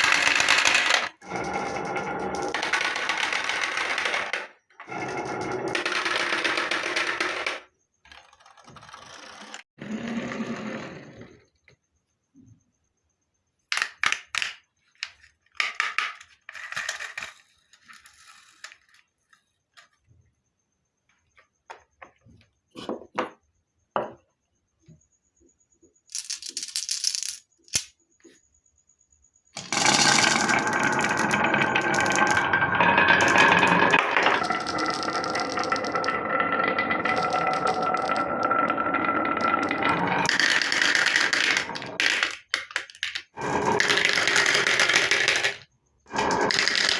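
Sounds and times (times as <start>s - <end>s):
marbles rattling down wooden run: 0.0s - 9.6s, 26.1s - 27.9s, 29.6s - 46.9s.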